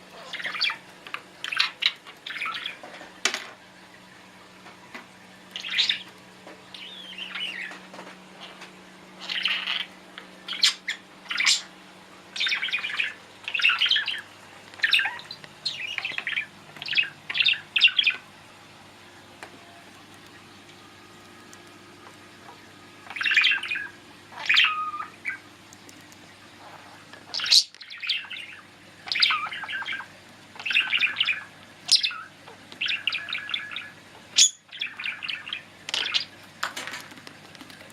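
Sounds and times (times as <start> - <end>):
budgerigar chattering and chirping: 9.2 - 9.9, 10.5 - 11.7, 12.4 - 18.2, 23.1 - 25.4, 27.3 - 36.4.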